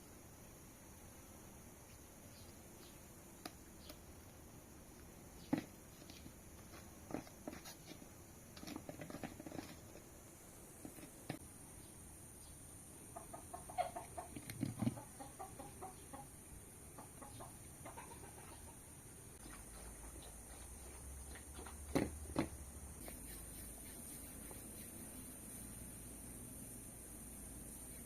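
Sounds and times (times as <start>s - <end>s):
chickens clucking: 13.0s - 22.1s.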